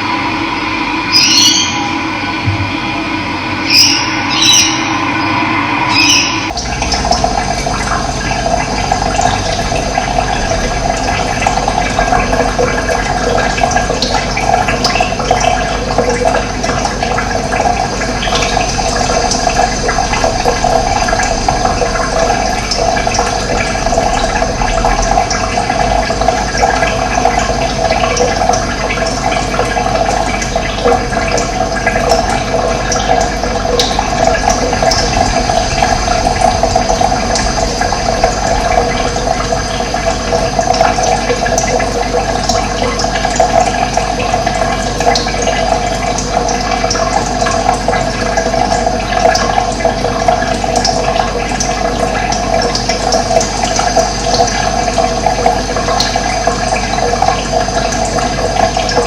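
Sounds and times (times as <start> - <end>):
running water rushing: 0.8 - 59.0.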